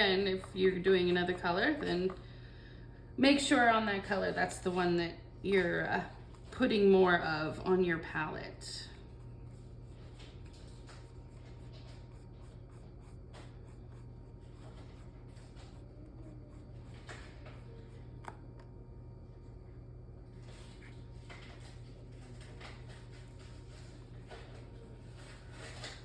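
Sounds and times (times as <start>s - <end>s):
low room hum: 0.0s - 26.0s
scratchy brush strokes: 9.0s - 17.7s.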